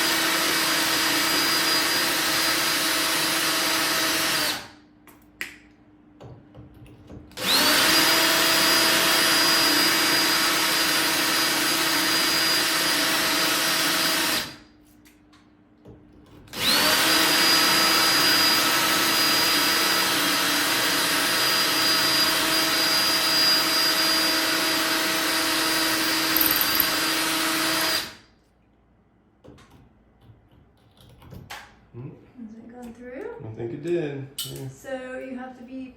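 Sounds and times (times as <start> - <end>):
electric drill drilling into tile: 0.0 - 4.8, 7.4 - 14.6, 16.5 - 28.2.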